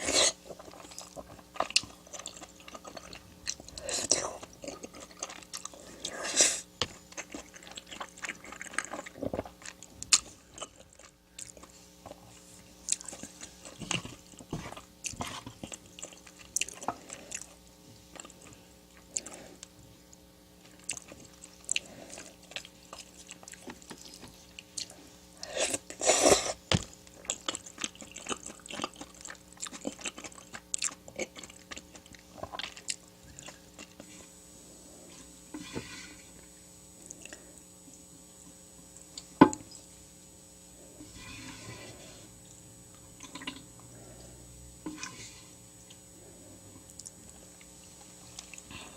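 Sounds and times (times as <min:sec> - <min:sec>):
person chewing and biting: 0:00.0 - 0:19.4, 0:20.6 - 0:34.1.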